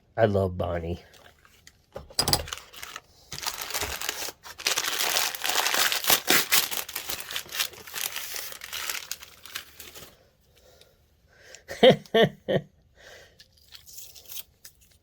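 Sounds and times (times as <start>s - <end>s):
packing material crinkling: 1.1s - 10.2s.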